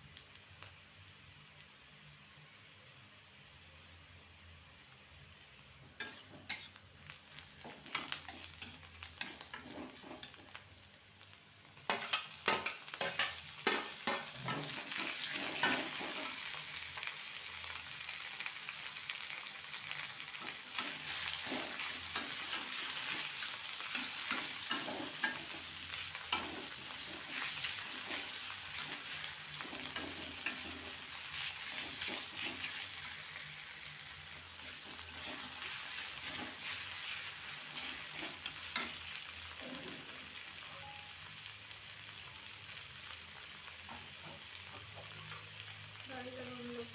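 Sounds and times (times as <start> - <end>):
food sizzling in pan: 0.0 - 46.9
spatula scraping pan: 6.0 - 6.8, 7.6 - 10.6, 11.9 - 16.5, 20.4 - 33.2, 34.6 - 40.1.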